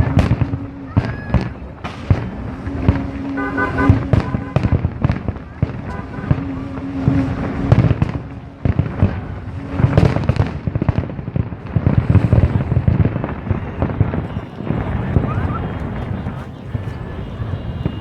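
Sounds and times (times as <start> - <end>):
low rumble: 0.0 - 16.4
fireworks bangs and crackles: 0.0 - 18.0.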